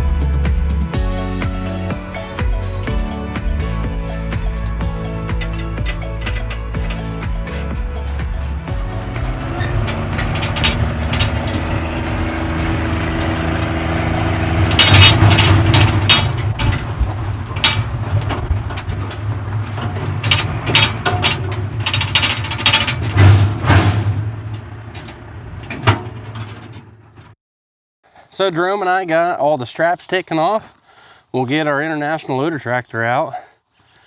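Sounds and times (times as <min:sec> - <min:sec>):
steady low hum: 0:00.0 - 0:16.8.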